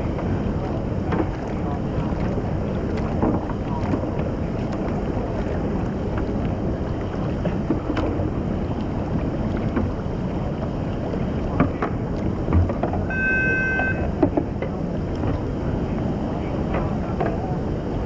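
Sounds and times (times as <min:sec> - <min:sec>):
wind buffeting microphone: 0:00.0 - 0:13.3
splashes and knocks: 0:00.0 - 0:15.5
rushing whitewater: 0:00.0 - 0:18.0
short beep tone: 0:13.1 - 0:14.1.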